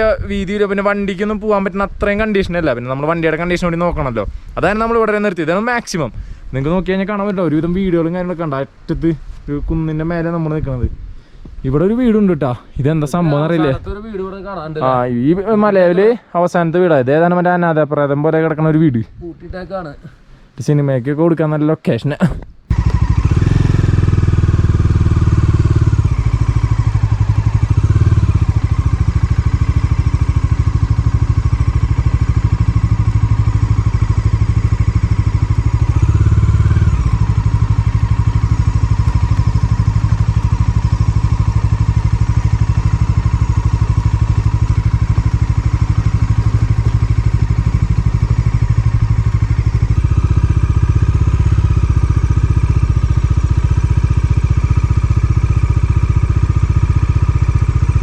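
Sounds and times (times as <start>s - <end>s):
motorcycle engine running: 22.7s - 58.0s.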